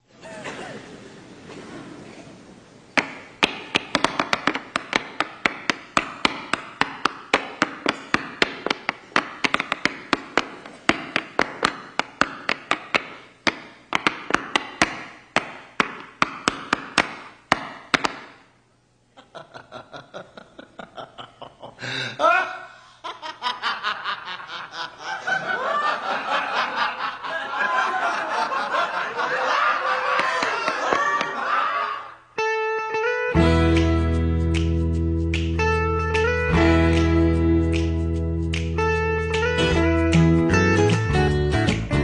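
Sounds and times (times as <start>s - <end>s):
tap shoes clattering on stage: 3.0s - 18.4s.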